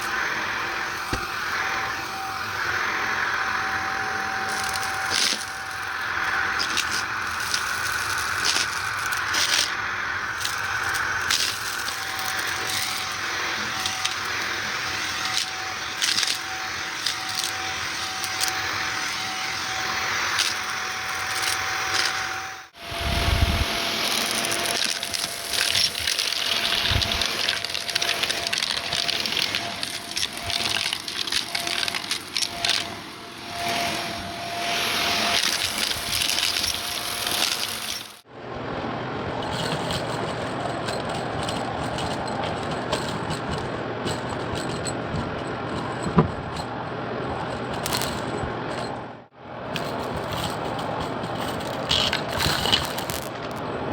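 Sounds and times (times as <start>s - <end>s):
vacuum cleaner motor whine: 0.0s - 40.1s
gritty debris crackling: 0.0s - 53.9s.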